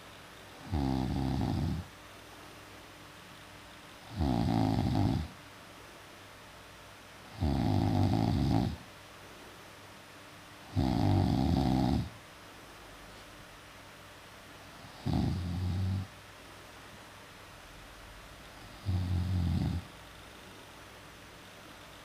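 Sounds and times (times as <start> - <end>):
loud snoring: 0.6 - 1.9, 4.0 - 5.4, 7.3 - 8.8, 10.7 - 12.2, 14.8 - 16.1, 18.6 - 19.9.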